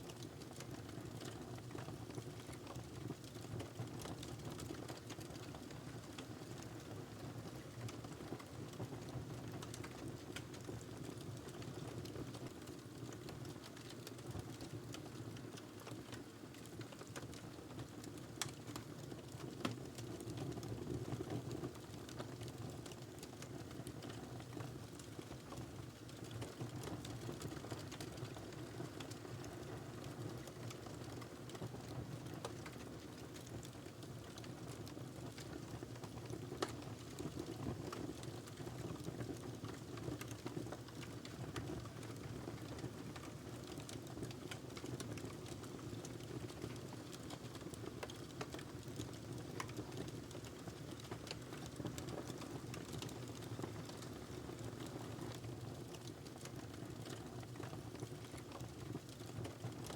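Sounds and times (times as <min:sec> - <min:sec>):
wood fire crackling: 0:15.4 - 0:20.3, 0:21.7 - 0:31.8, 0:32.4 - 0:59.9.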